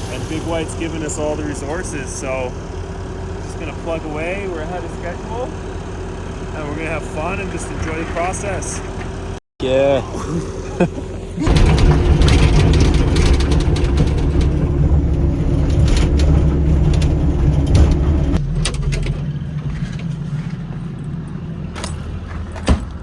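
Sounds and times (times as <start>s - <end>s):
excavator diesel engine working: 0.0s - 23.0s
metal knocks and clanks: 11.4s - 20.2s.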